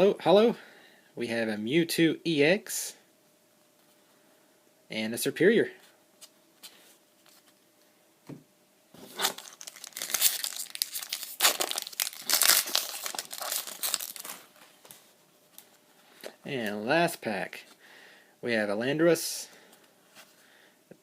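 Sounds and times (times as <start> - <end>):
foil wrapper tearing and crinkling: 9.0 - 14.6.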